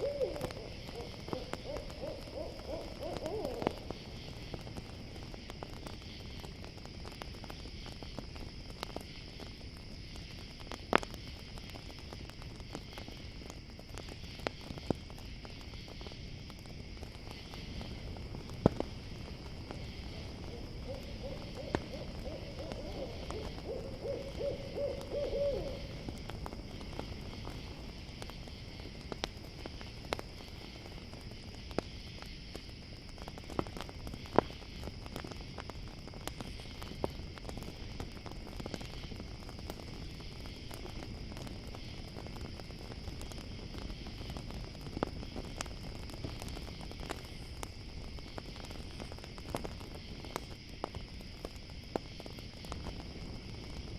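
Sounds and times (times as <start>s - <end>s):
owl hooting: 0.0s - 3.8s, 20.5s - 26.0s
campfire crackling and popping: 0.0s - 53.9s
crickets chirring: 0.0s - 53.9s.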